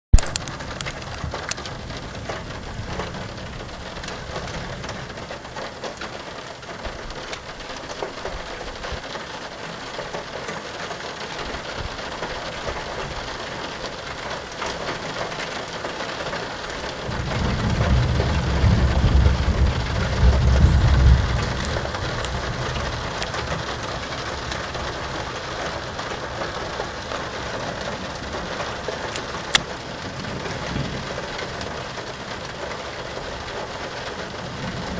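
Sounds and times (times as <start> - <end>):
sharp click: 0.1 - 0.9
low rumble of thunder: 0.1 - 9.2, 11.4 - 34.9
steady rain falling: 0.1 - 34.9.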